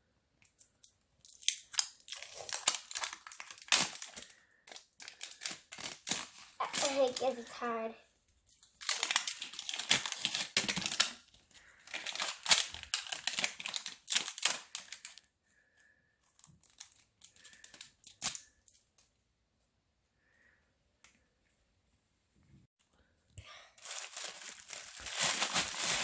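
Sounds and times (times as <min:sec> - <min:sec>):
plastic wrapping tearing and crinkling: 0:01.2 - 0:07.6, 0:08.5 - 0:15.3, 0:16.2 - 0:18.9, 0:23.8 - 0:26.0.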